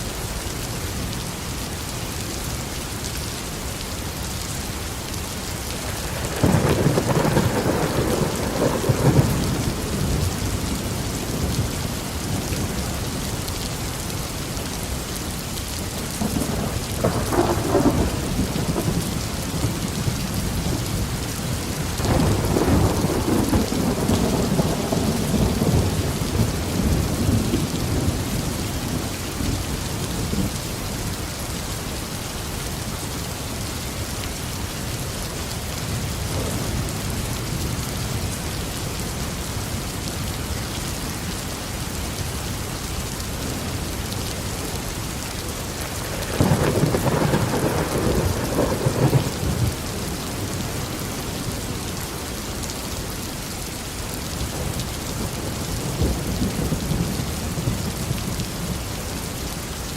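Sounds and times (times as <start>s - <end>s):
rain falling on a garden: 0.0s - 59.9s
thunder rumbling: 5.8s - 13.0s, 16.2s - 30.5s, 45.7s - 50.9s.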